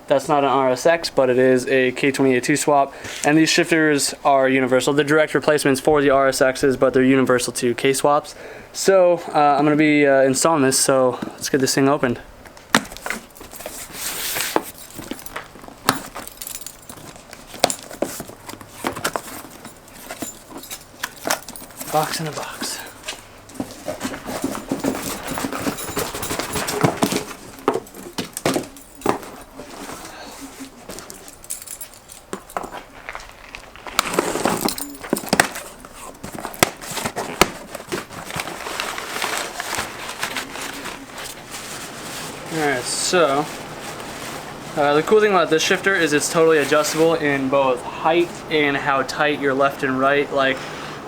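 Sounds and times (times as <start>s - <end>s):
packaging rustling: 12.4s - 48.2s.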